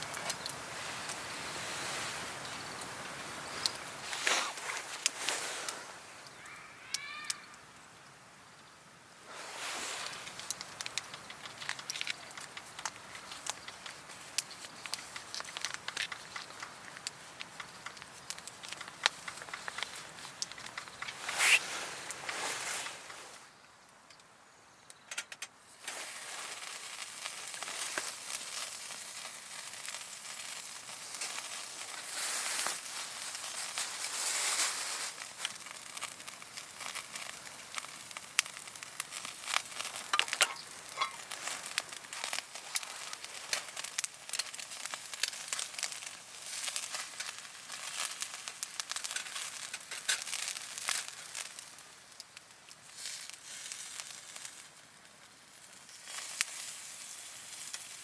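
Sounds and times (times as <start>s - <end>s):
food sizzling in a pan: 19.3s - 23.1s, 25.8s - 52.2s.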